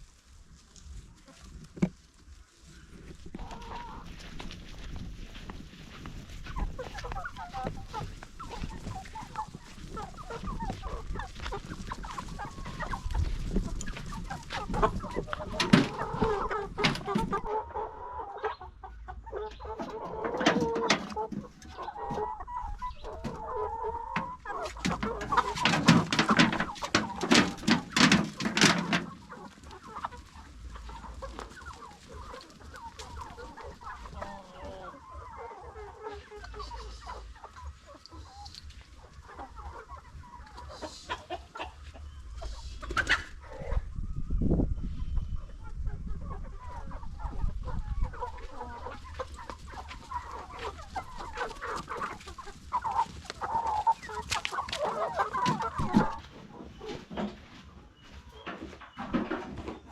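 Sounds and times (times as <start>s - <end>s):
chickens clucking: 0.0s - 59.9s.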